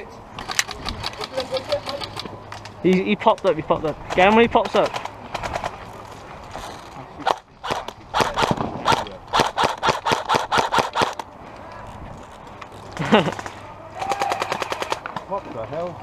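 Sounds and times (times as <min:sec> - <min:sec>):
airsoft guns firing: 0:07.2 - 0:11.2, 0:13.3 - 0:15.2.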